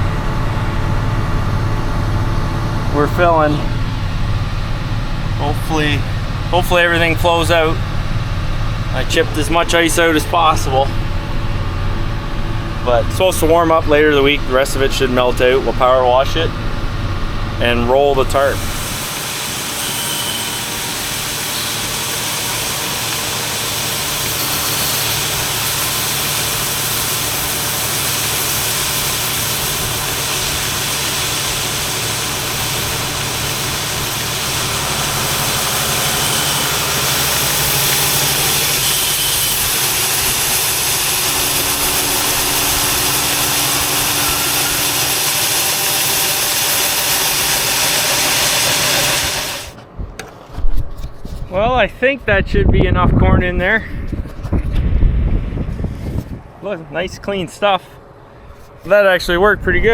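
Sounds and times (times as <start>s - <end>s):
tractor engine running: 0.0s - 19.7s, 20.7s - 50.2s
unloading auger running: 1.1s - 50.4s
corn pouring into truck: 20.5s - 49.7s.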